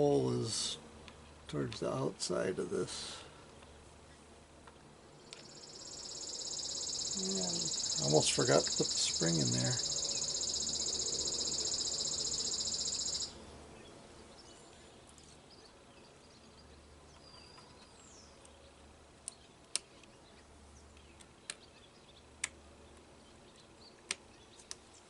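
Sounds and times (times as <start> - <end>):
insect trill: 5.4 - 13.4.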